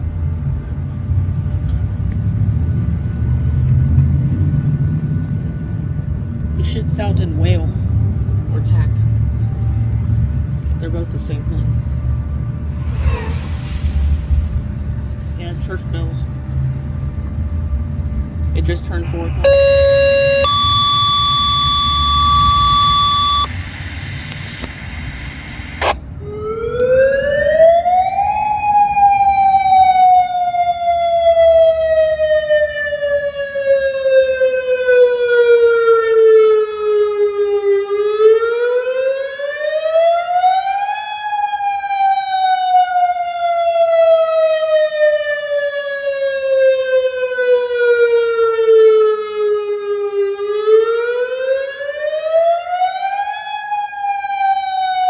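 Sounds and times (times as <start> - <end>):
warning siren wailing: 18.6 - 55.0.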